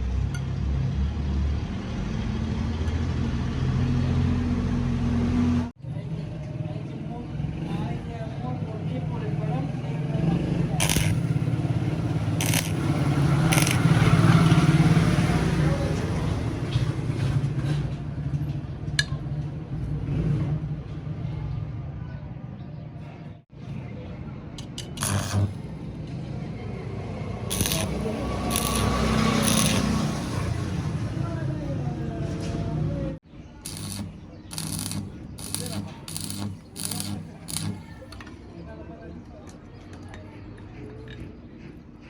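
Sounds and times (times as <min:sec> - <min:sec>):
sharp click: 0:10.8 - 0:11.3, 0:12.4 - 0:12.8, 0:27.5 - 0:30.0, 0:33.7 - 0:37.9
machine motor humming: 0:10.8 - 0:14.2, 0:24.9 - 0:25.7, 0:27.5 - 0:30.5, 0:33.7 - 0:38.0.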